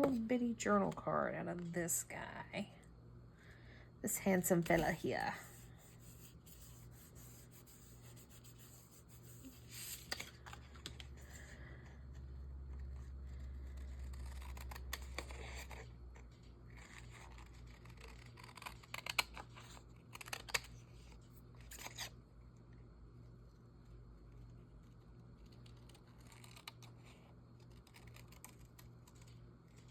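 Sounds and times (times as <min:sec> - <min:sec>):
scissors cutting paper: 0:12.8 - 0:20.7, 0:25.4 - 0:29.9.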